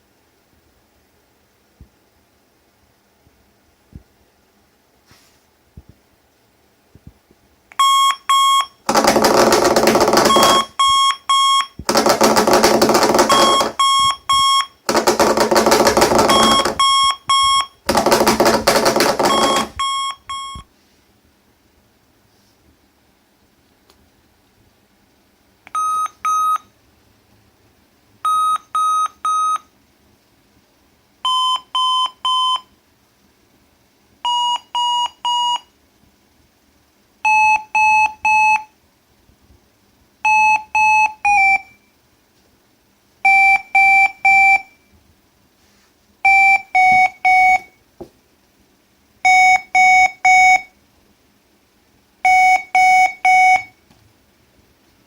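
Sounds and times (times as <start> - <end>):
alarm clock beeping: 7.8 - 20.6, 46.3 - 47.7, 49.3 - 50.7.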